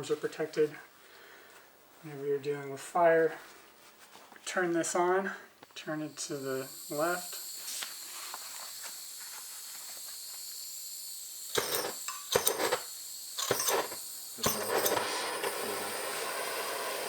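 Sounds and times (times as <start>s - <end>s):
gas torch hissing: 6.0s - 17.0s.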